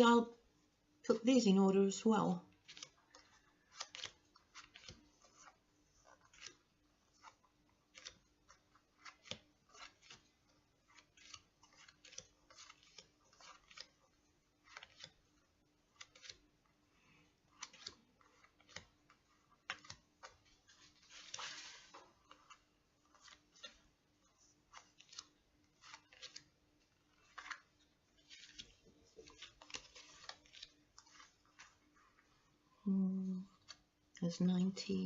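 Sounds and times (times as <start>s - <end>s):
cards snapping and tapping: 11.2s - 13.9s, 17.6s - 18.9s.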